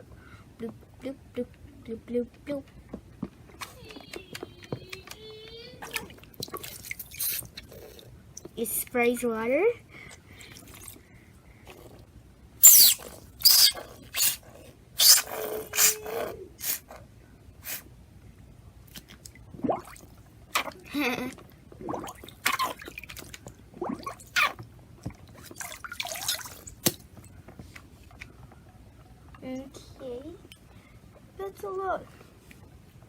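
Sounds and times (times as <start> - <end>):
water splashes and drips: 5.8 - 7.6, 21.8 - 24.5, 25.1 - 27.2.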